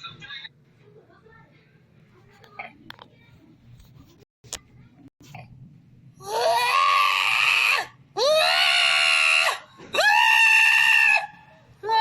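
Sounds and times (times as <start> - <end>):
loud screams: 6.2 - 12.0.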